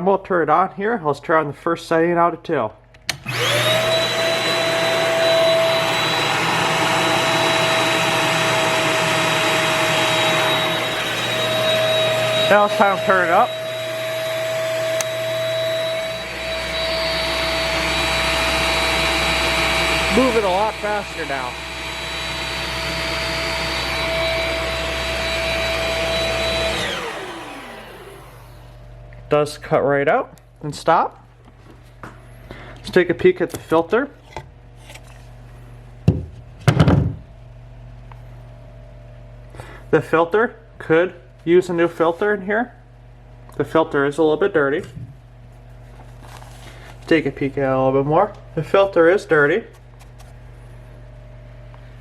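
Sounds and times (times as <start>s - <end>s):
vacuum cleaner motor whining: 3.1s - 29.0s.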